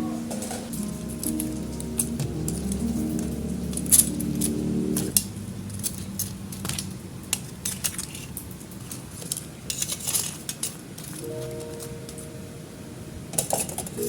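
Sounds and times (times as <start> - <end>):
soft background music: 0.0 - 5.2, 11.2 - 14.0
utensils and dishes clinking: 0.2 - 12.2, 13.3 - 14.0.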